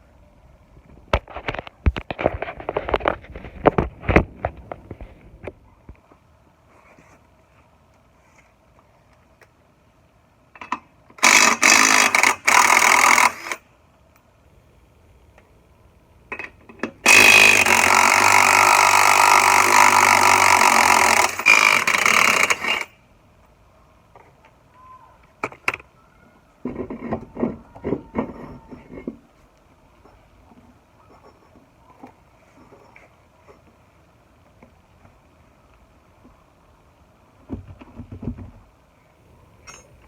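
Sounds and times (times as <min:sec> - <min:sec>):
power tool running: 0:11.2 - 0:13.6, 0:17.0 - 0:22.9.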